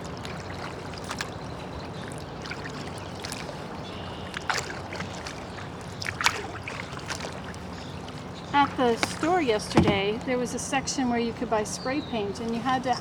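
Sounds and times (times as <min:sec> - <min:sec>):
paddle dipping and dripping in water: 0:00.0 - 0:10.4
small water splashes: 0:00.0 - 0:10.4
low steady hum: 0:03.6 - 0:13.0.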